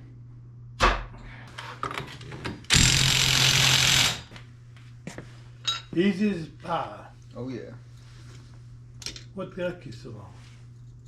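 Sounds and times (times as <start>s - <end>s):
power tool burst: 2.7s - 4.3s.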